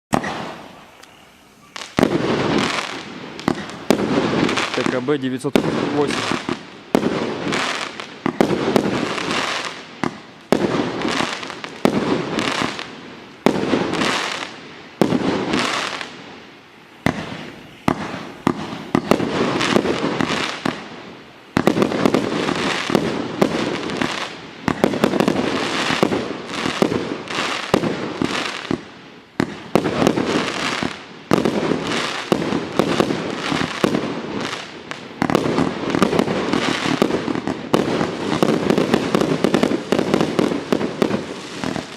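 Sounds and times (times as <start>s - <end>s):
firework cake bangs: 17.0s - 20.9s.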